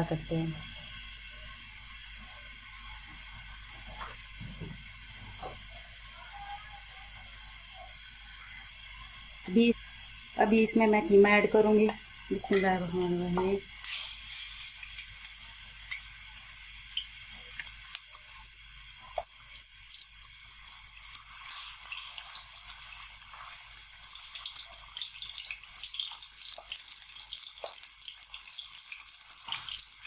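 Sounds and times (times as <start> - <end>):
crackles and pops of frying: 0.0 - 30.0
meat sizzling in hot oil: 0.0 - 30.0.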